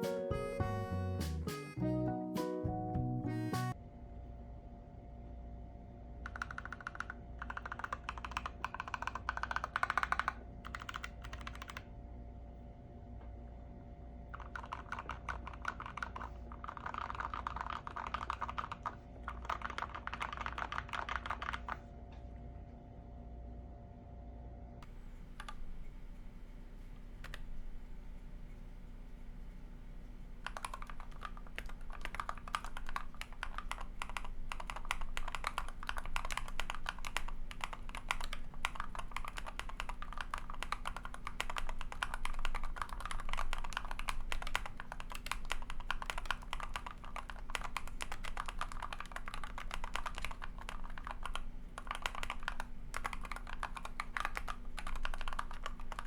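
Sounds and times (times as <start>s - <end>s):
typing on mechanical keyboard: 6.2s - 11.9s, 14.3s - 21.9s, 24.8s - 28.8s, 29.7s - 56.0s.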